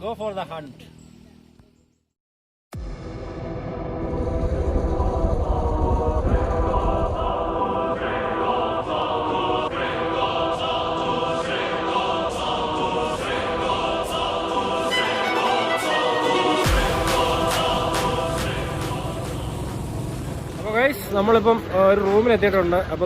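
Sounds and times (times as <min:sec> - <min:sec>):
choir-like chords: 0:02.8 - 0:20.6
heavy bass: 0:02.8 - 0:21.3
light regular beat: 0:16.5 - 0:20.2.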